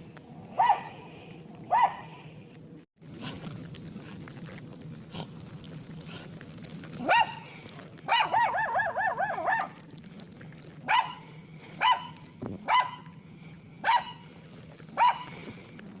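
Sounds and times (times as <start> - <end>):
dog barking: 0.5 - 1.0, 1.7 - 2.2, 7.0 - 7.4, 8.1 - 9.8, 10.9 - 11.2, 11.8 - 13.1, 13.8 - 14.2, 14.9 - 15.4.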